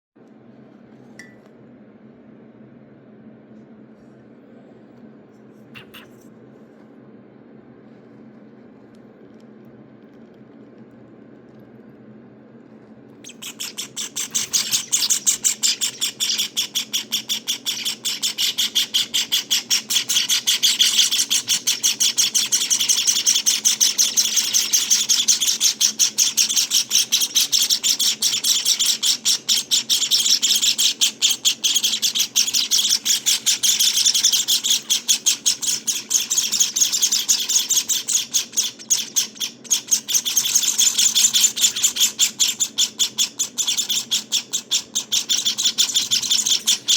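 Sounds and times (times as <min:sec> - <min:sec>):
nestlings chirping rapidly: 0:05.8 - 0:06.1, 0:13.2 - 0:46.9.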